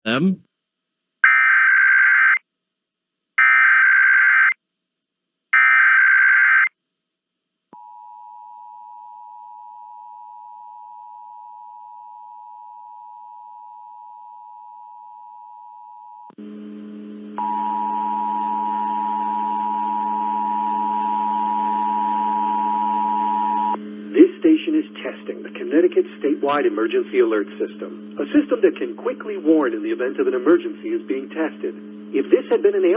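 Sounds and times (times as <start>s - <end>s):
low hum and hiss: 16.3s - 32.9s.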